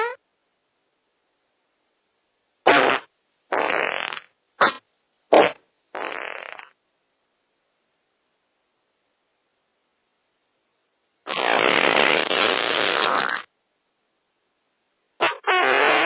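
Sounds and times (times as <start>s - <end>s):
fart sound effects: 2.7s - 6.7s, 11.3s - 13.5s, 15.2s - 16.0s.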